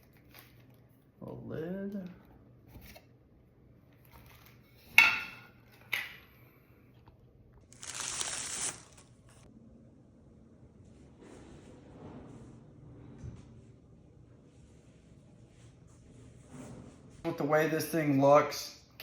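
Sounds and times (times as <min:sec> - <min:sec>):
packaging rustling: 0:07.6 - 0:09.4.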